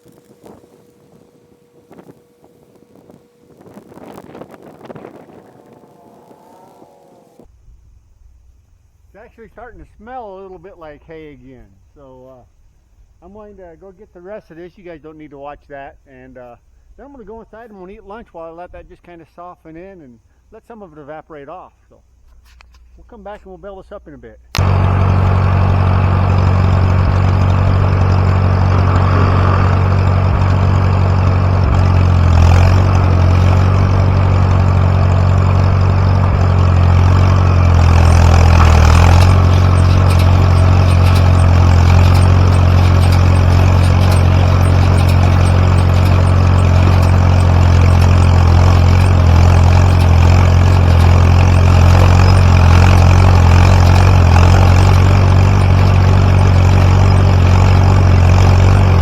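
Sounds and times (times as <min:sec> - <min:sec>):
tractor engine running: 0:24.6 - 0:59.0.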